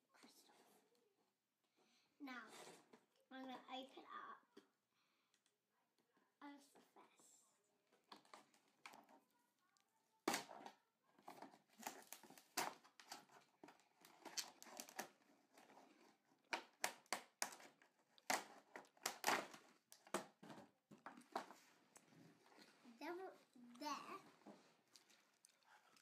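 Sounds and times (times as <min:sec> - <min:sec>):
packaging crinkling and ripping: 0:11.7 - 0:20.3.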